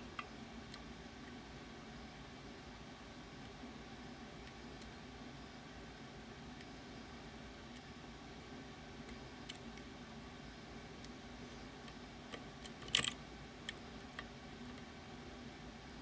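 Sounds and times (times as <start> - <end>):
lock picking clicks: 11.8 - 14.8
metallic rattle: 12.7 - 13.2.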